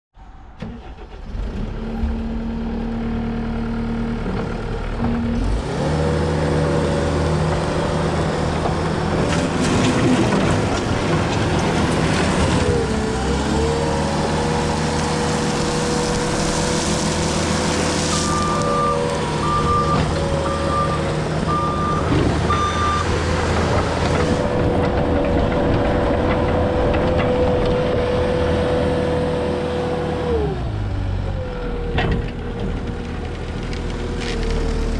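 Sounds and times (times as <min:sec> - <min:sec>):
diesel engine revving: 0:00.6 - 0:34.9
backup alarm beeping: 0:18.1 - 0:23.1.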